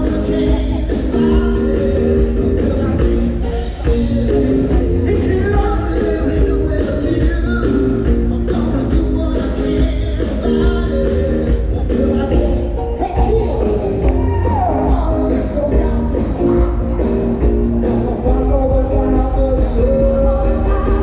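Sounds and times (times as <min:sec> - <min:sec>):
people singing: 0:00.0 - 0:13.6, 0:17.8 - 0:21.0
heavy bass: 0:00.0 - 0:21.0
live band music: 0:00.0 - 0:21.0
steady drum beat: 0:00.0 - 0:21.0.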